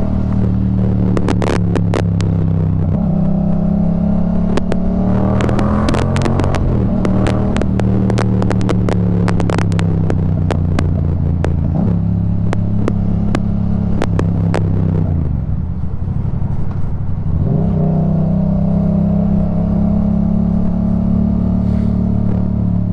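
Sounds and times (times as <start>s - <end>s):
microphone connection popping: 0.0s - 17.3s, 19.1s - 22.9s
motorcycle engine running: 0.0s - 22.9s.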